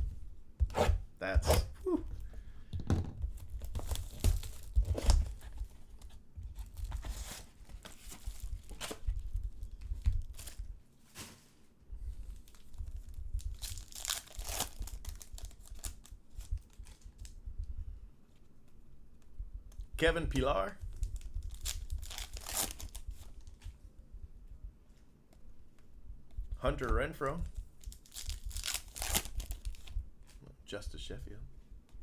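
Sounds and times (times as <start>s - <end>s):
card wrappers tearing and crinkling: 3.6s - 5.5s, 13.6s - 16.1s, 21.1s - 23.5s, 27.8s - 30.0s.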